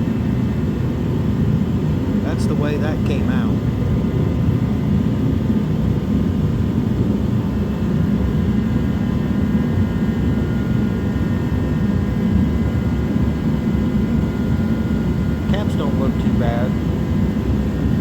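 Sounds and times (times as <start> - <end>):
jet heater roaring: 0.0 - 18.0
faint high whine: 14.1 - 18.0.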